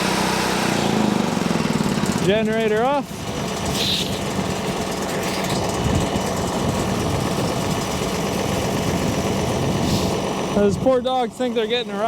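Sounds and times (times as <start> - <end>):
tractor diesel engine idling: 0.0 - 12.0.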